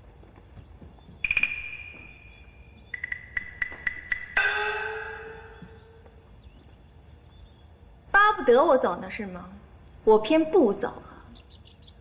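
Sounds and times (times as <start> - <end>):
struck percussive notes: 1.2 - 6.0.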